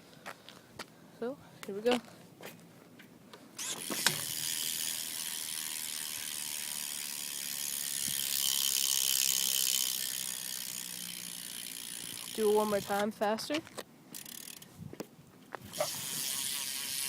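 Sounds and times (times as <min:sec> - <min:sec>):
bike hub ratcheting buzz: 0:03.6 - 0:13.0, 0:14.1 - 0:14.7, 0:15.7 - 0:17.0.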